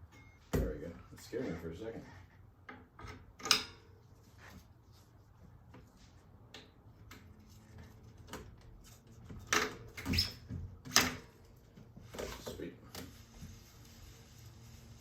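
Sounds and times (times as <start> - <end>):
bicycle parts and tools clunking: 2.5 - 4.7, 5.6 - 13.1.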